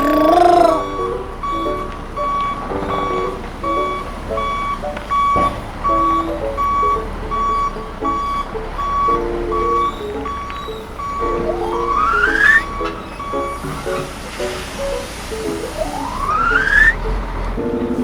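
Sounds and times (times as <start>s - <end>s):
reversing beeper: 0.0s - 14.1s, 14.8s - 17.2s
lower tones: 5.8s - 18.0s.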